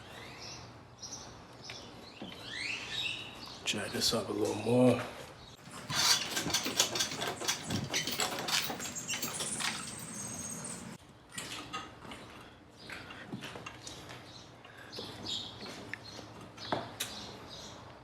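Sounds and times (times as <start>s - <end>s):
floor jack clicking and rattling: 5.6s - 10.8s
high squeak: 5.8s - 11.0s.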